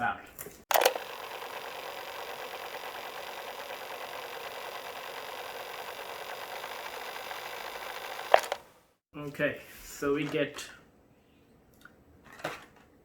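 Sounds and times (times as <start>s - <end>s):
machine whirring: 0.7s - 8.9s.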